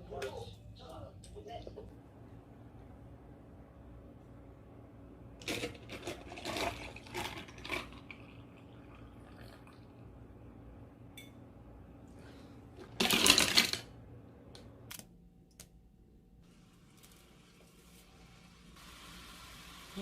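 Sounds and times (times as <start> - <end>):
low steady hum: 0.0 - 20.0
water running: 16.5 - 20.0.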